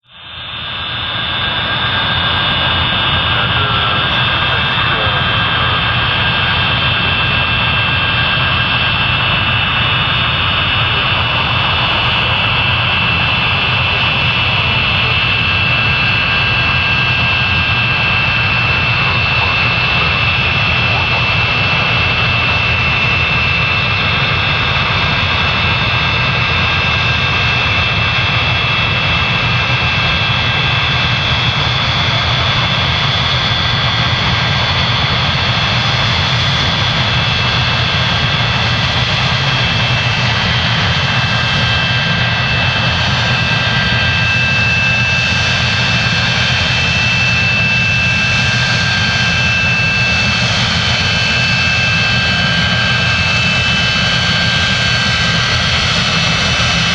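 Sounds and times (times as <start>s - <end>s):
jet engine roar: 0.0s - 56.9s
high whining tones: 0.2s - 26.0s.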